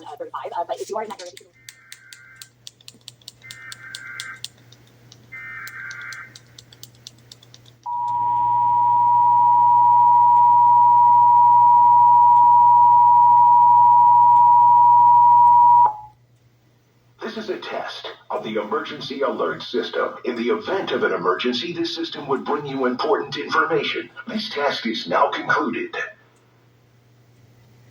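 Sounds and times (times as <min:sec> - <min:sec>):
data tone bursts: 0:07.9 - 0:16.1
two-tone attention signal: 0:07.9 - 0:16.1.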